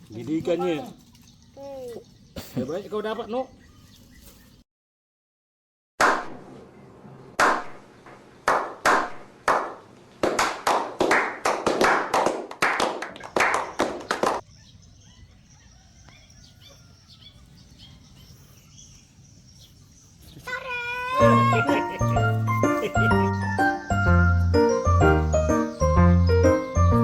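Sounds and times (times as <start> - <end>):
faint bird chirps: 1.1 - 4.6, 13.6 - 22.2
sharp slaps: 6.0 - 6.5, 7.4 - 14.4.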